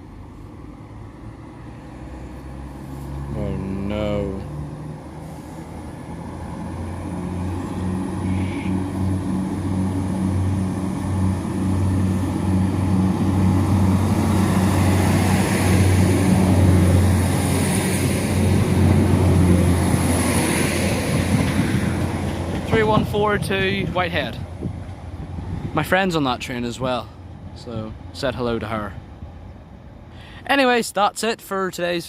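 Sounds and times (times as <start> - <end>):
wheel and rail noise: 0.0 - 31.0
diesel train engine droning: 0.0 - 31.9.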